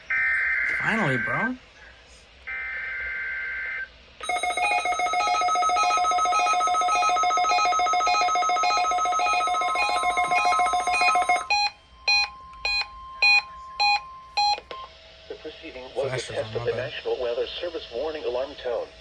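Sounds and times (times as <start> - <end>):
steady warning alarm tone: 0.1 - 1.6, 2.5 - 15.0
trilling electronic alarm: 0.1 - 1.6, 2.5 - 14.9.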